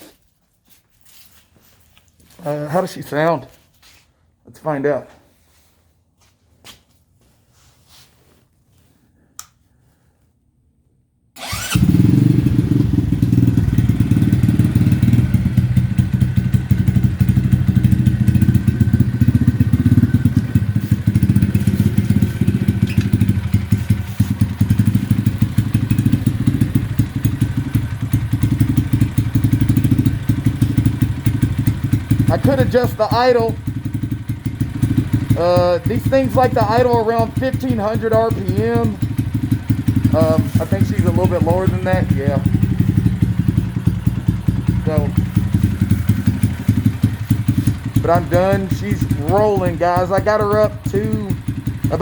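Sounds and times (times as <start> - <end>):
motorcycle engine starting and idling: 11.4 - 52.0.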